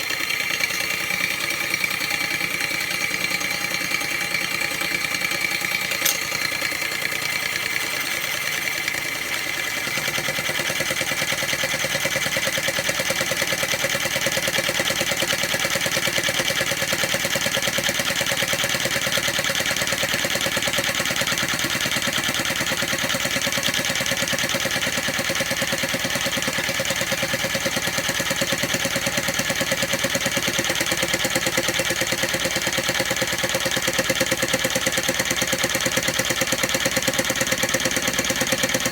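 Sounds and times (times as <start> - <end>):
scroll saw mechanical chatter: 0.0 - 13.3, 25.5 - 38.9.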